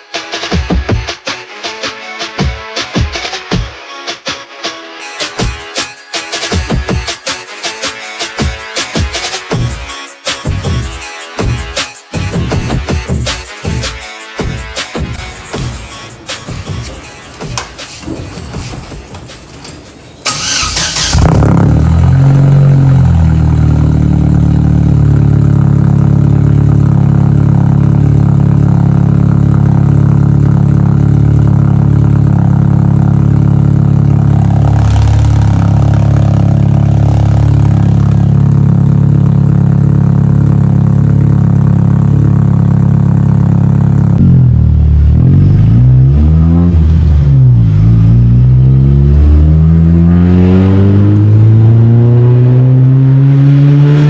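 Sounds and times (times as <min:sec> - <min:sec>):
car engine revving: 0:13.1 - 0:54.0
car engine starting and idling: 0:15.0 - 0:54.0.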